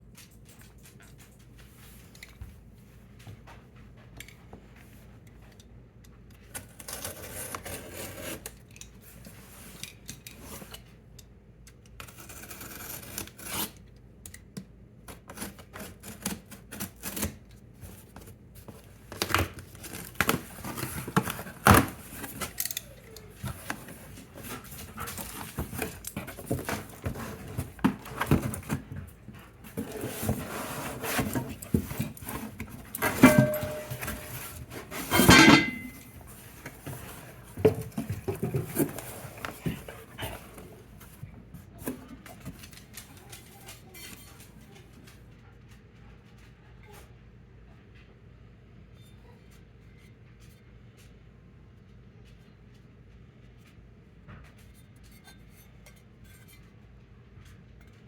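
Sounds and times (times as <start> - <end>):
paper and cardboard rustling: 15.1 - 45.3
knocks clicks and clinks: 29.7 - 40.2.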